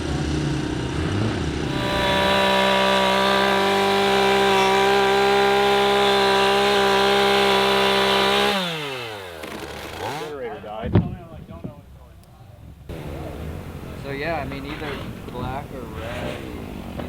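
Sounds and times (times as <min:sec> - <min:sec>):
power tool motor running: 0:01.7 - 0:10.3.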